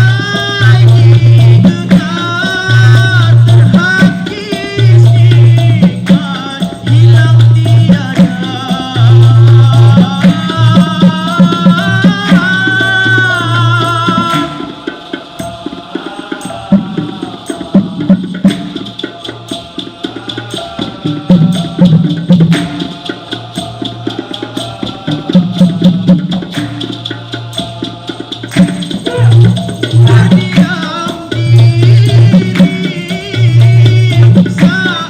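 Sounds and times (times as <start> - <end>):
rapid tapped percussion: 0.0 - 35.0
person singing: 27.8 - 35.0.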